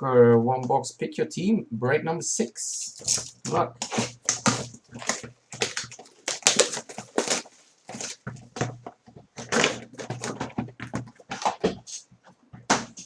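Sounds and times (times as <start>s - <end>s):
packaging crinkling and rustling: 2.8s - 12.0s.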